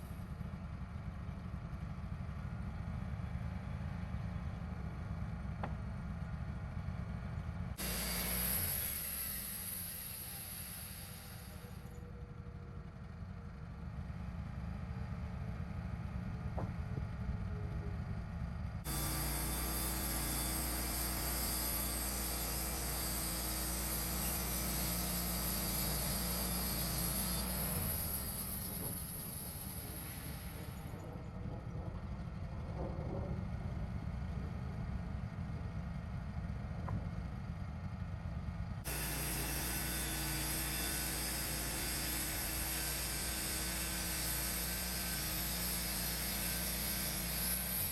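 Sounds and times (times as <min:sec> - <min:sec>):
band sawmill running: 0:05.6 - 0:12.0, 0:18.6 - 0:33.3, 0:38.8 - 0:47.9.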